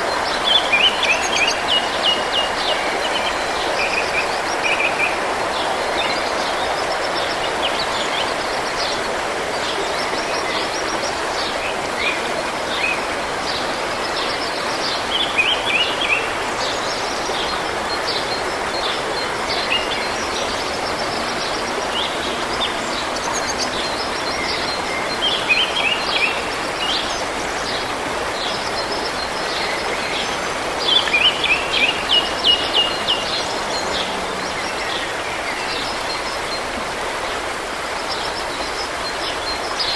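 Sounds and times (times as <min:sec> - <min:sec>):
songbirds singing: 0:00.0 - 0:36.8
stream running: 0:00.0 - 0:39.9.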